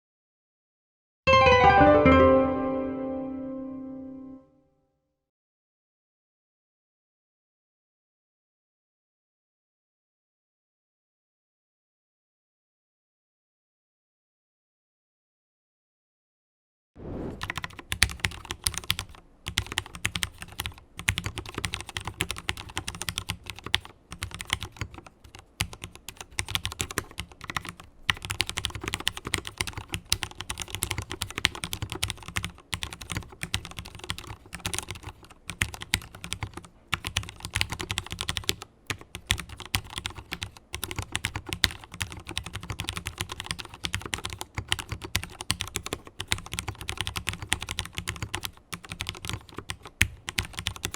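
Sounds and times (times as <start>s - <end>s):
mechanical keyboard typing: 17.4s - 50.9s.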